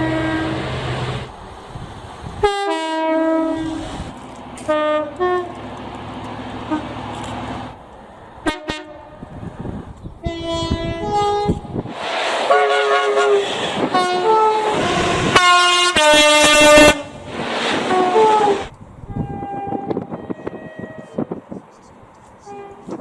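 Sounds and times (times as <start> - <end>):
locomotive two-tone horn blasts: 0.0 - 1.3, 2.4 - 4.0, 4.6 - 5.6, 6.6 - 7.0, 8.4 - 9.2, 10.2 - 11.7, 12.5 - 21.3, 22.4 - 23.0
train passing: 0.0 - 23.0.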